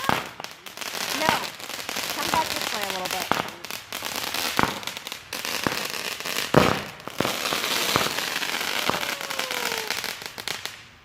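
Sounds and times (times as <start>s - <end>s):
firework bangs: 0.0s - 10.9s
fireworks crackling: 0.0s - 11.0s
falling firework whistle: 7.4s - 10.7s.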